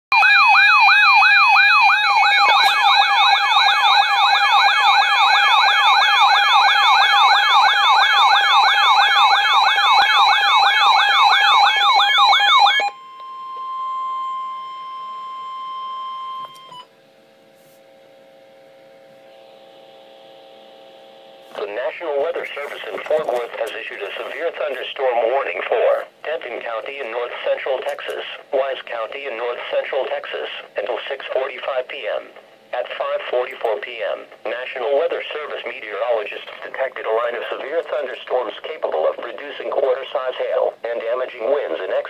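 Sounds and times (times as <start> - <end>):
wailing emergency siren: 0.1 - 16.9
faint steady hum: 12.6 - 42.0.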